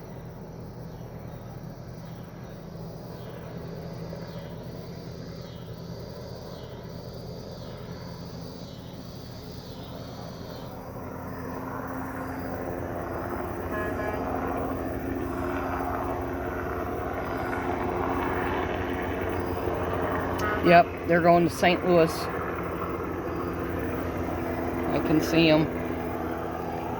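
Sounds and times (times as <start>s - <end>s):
helicopter rotor and turbine: 0.0s - 26.9s.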